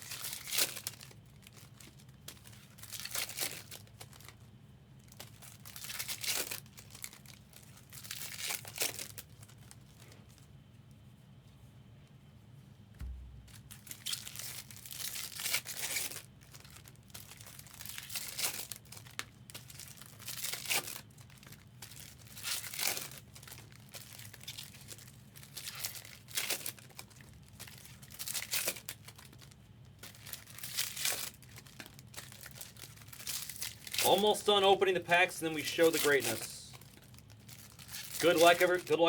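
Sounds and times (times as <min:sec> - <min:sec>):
foil packs being torn open: 0:00.0 - 0:10.1, 0:13.6 - 0:39.0
wrappers crinkling: 0:00.0 - 0:10.5, 0:13.4 - 0:39.0
dull thump: 0:13.0 - 0:13.7.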